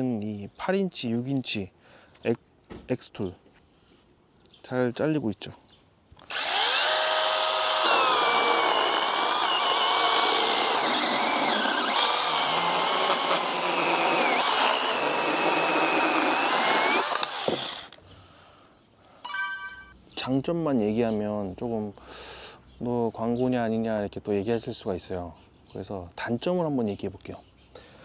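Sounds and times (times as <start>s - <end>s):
electric chainsaw cutting log: 6.2s - 18.0s.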